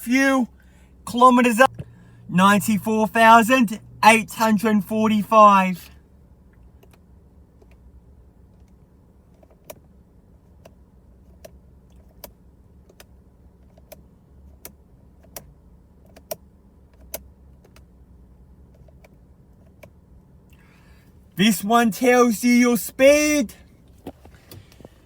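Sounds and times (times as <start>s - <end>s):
low cabin hum: 0.0s - 5.9s, 21.3s - 25.0s.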